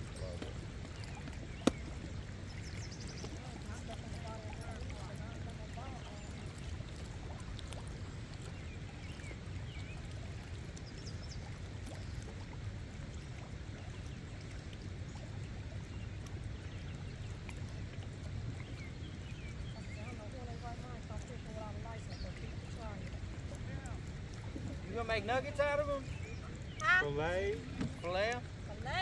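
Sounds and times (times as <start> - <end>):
rushing water: 0.0 - 29.0.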